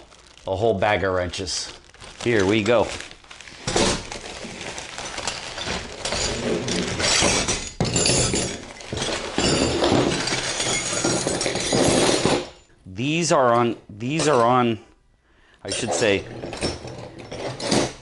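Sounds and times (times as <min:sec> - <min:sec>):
steel wrenches clattering: 0:05.0 - 0:12.6, 0:15.7 - 0:18.0.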